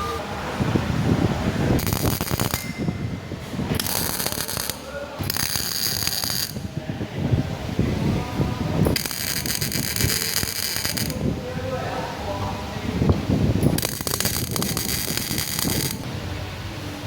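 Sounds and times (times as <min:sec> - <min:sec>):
welding crackling hiss: 0:01.7 - 0:02.8, 0:03.7 - 0:06.7, 0:08.8 - 0:11.2, 0:13.6 - 0:16.0.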